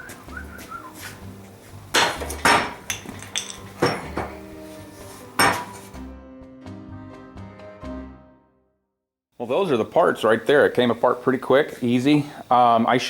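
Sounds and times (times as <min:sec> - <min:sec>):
metal parts clanking and ringing: 0:02.9 - 0:04.2.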